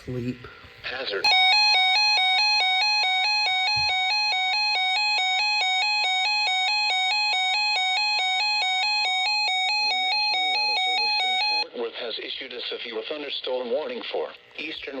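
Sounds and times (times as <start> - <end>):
two-pitch weather alert tone: 1.3 - 11.6
steady high tone: 1.3 - 11.7.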